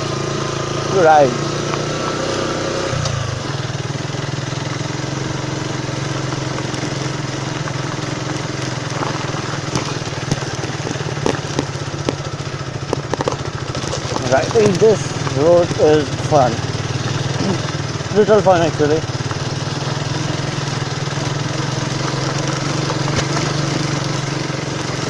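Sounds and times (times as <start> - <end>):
motorcycle engine running: 0.0 - 25.0
sharp clicks and knocks: 8.3 - 16.1.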